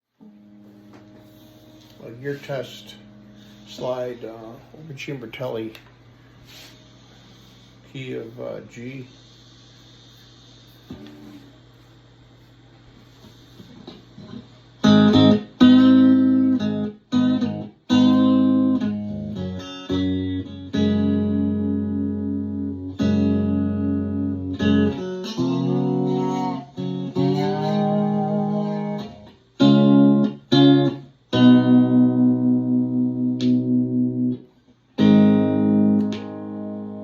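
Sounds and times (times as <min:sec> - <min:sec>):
slide electric guitar arpeggios: 0:00.2 - 0:05.7, 0:14.2 - 0:34.4, 0:35.0 - 0:37.0.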